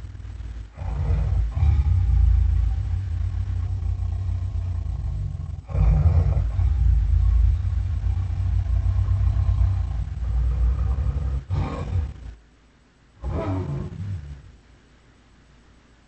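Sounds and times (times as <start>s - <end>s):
roar: 0.0s - 12.4s, 13.2s - 14.6s
deep heavy rumble: 0.0s - 12.5s.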